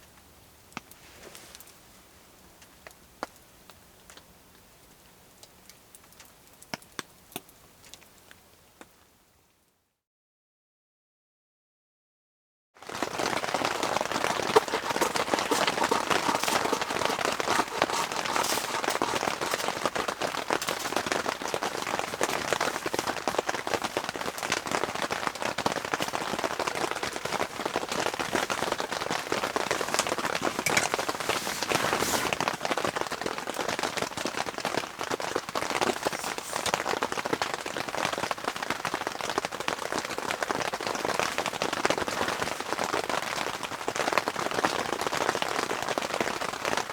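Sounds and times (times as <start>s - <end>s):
heavy rain: 16.8s - 30.0s.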